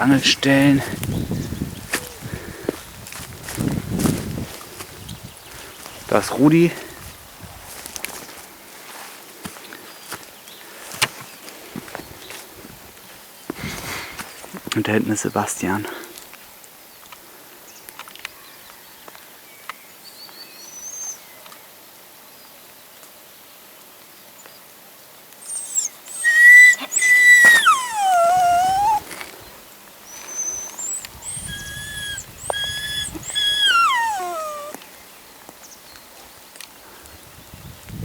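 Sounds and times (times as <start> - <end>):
dog whining: 25.5 - 29.2, 30.1 - 34.8.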